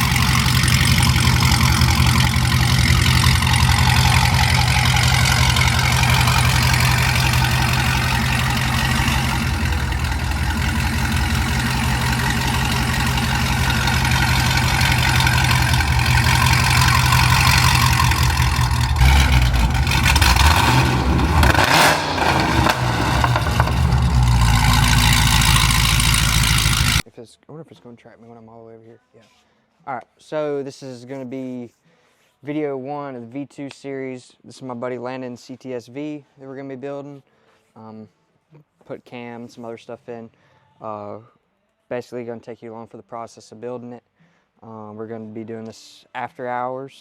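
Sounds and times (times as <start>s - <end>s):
car engine idling: 0.0s - 27.0s
engine revving: 0.0s - 27.0s.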